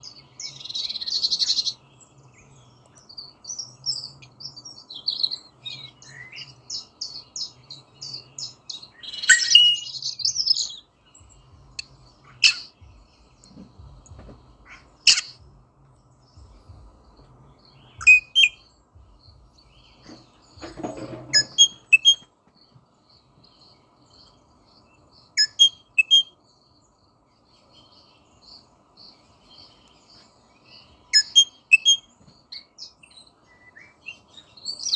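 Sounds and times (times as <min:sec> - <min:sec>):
parrot chirps and whistles: 0:14.6 - 0:15.4, 0:18.0 - 0:18.6, 0:21.3 - 0:22.2, 0:25.4 - 0:26.3, 0:31.1 - 0:32.0.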